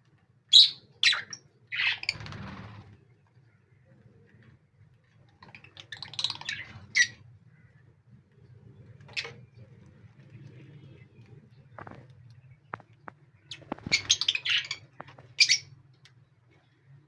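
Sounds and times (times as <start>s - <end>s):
lovebirds chirping: 8.9s - 15.8s.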